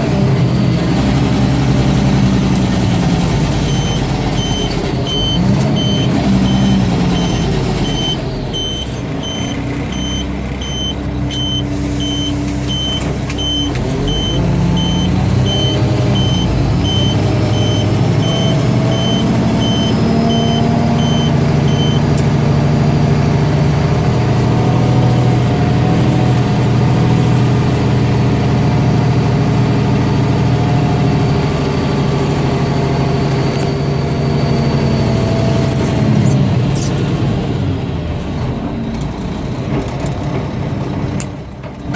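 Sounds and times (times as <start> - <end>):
diesel truck engine running: 0.0 - 41.9
reversing alarm beeping: 0.4 - 22.2.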